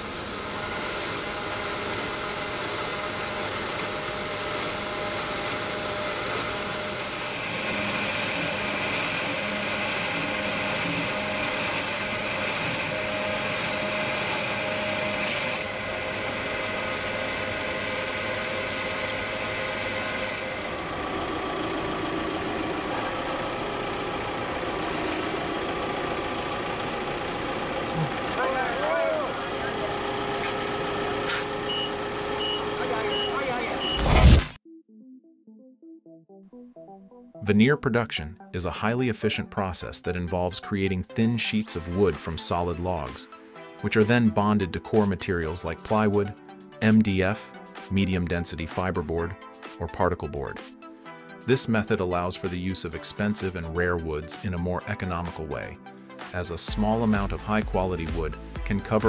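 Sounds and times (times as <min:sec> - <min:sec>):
machinery humming: 0:00.0 - 0:34.4.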